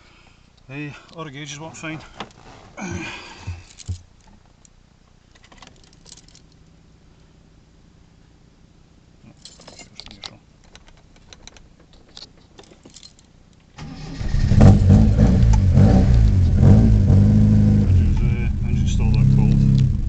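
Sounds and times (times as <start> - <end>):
faint clicks and rattles: 3.4 - 6.7, 9.4 - 13.8
car engine revving loudly: 13.8 - 20.0
engine cranking: 13.8 - 20.0.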